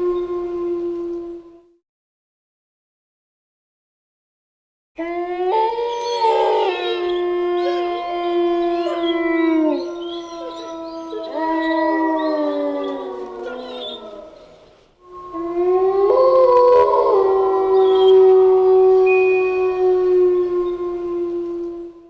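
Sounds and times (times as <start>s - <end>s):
wolves howling: 5.0s - 22.0s.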